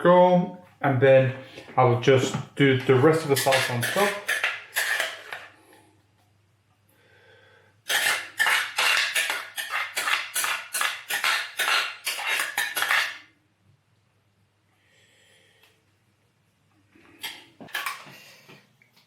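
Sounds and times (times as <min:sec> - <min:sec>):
spoon scraping container: 0:03.1 - 0:05.6, 0:07.9 - 0:13.3.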